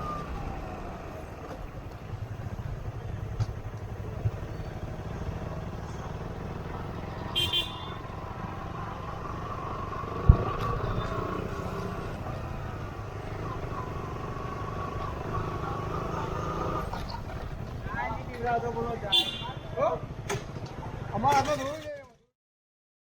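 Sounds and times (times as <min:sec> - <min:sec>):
motorcycle running: 0:00.0 - 0:21.8
wind and road noise: 0:00.0 - 0:22.0
vehicle horn toots: 0:07.3 - 0:08.1, 0:19.1 - 0:19.6
sharp thump: 0:10.2 - 0:10.8.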